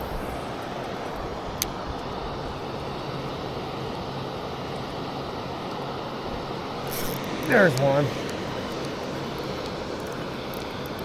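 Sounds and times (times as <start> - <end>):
water roaring over a dam: 0.0 - 11.0.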